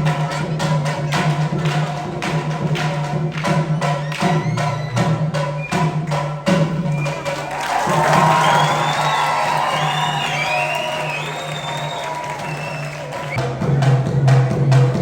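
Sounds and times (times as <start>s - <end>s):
drum beats: 0.0s - 15.0s.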